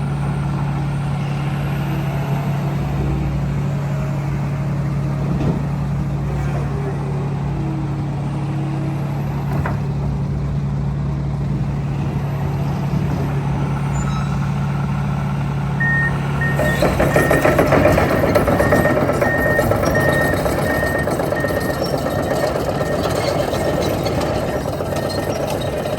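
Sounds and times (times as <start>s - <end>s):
excavator diesel engine running: 0.0s - 25.9s
travel alarm beeping: 15.8s - 17.4s, 18.5s - 23.2s.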